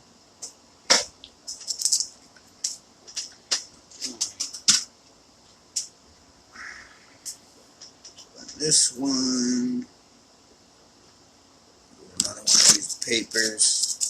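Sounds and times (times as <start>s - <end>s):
sharp clicks of laptop parts: 0.4s - 4.9s
scratchy rattles of small parts: 0.9s - 4.9s, 12.1s - 14.0s.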